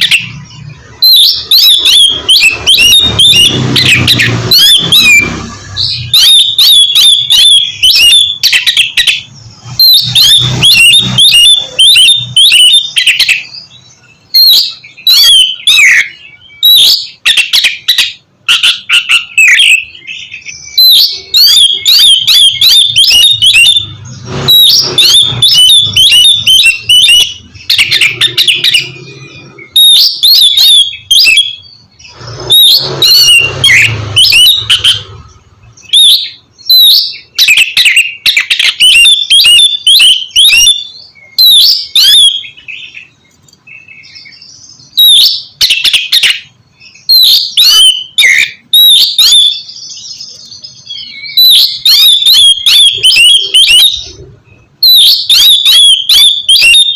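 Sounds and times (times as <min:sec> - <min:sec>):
magpie-robin singing: 0:00.0 - 0:56.9.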